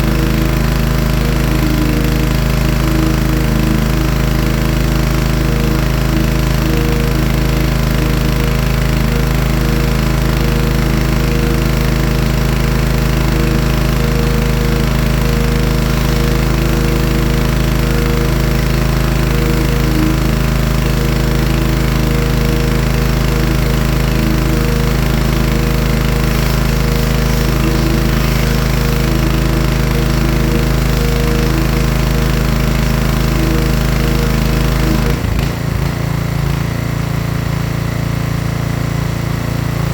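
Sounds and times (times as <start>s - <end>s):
small engine humming: 0.0s - 39.9s
high-pressure water jet hissing: 15.1s - 37.1s.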